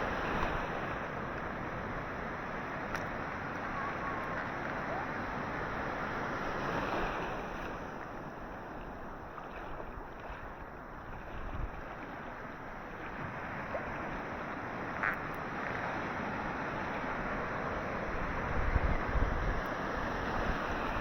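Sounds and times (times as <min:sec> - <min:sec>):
ocean surf washing: 0:00.0 - 0:21.0
wind buffeting microphone: 0:09.6 - 0:14.4, 0:18.0 - 0:21.0.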